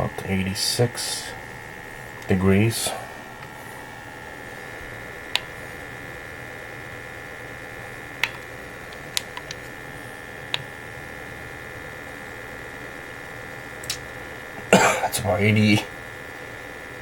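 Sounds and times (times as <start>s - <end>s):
fan humming and whining: 0.0s - 17.0s
short sharp clicks: 13.8s - 14.0s.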